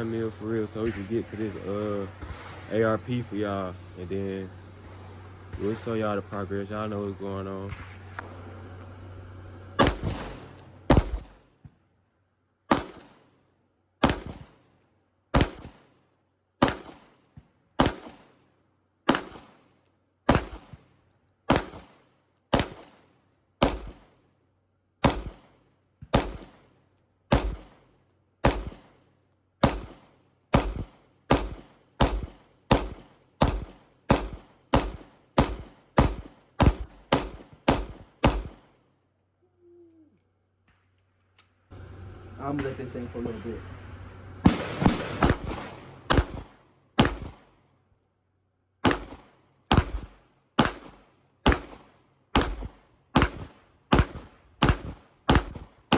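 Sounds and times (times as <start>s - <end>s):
handgun shots: 9.8s - 11.4s, 14.0s - 14.5s, 16.6s - 17.0s, 17.8s - 18.2s, 19.1s - 19.5s, 20.3s - 20.8s, 21.5s - 21.9s, 22.5s - 22.9s, 23.6s - 24.0s, 25.0s - 25.4s, 26.1s - 26.6s, 27.3s - 27.8s, 28.4s - 28.9s, 29.6s - 38.6s, 44.5s - 47.5s, 48.8s - 55.9s.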